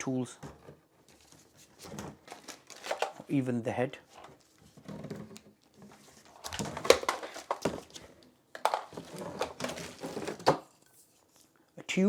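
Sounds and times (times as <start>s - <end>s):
plastic parts clicking: 1.8s - 3.3s, 6.2s - 10.6s.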